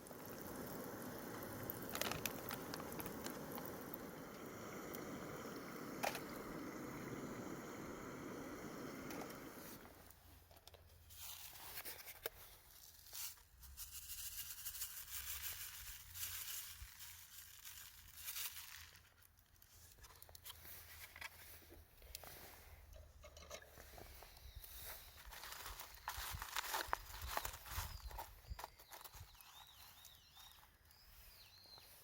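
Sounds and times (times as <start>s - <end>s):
crinkling and rustling: 0.3s - 4.5s, 9.0s - 31.0s
small scattered clicks: 1.4s - 4.0s.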